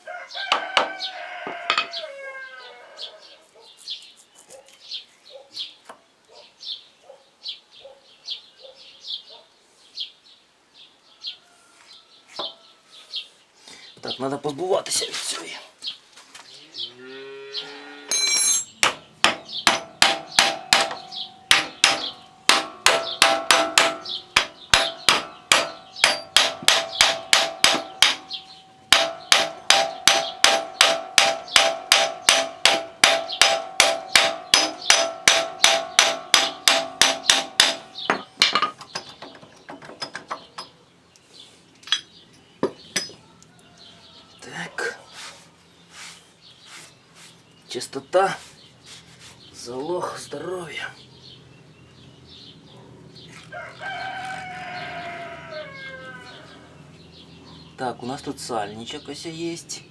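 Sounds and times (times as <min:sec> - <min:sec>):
hammer blows on metal: 0:18.1 - 0:38.6
scattered knocks: 0:18.2 - 0:40.8.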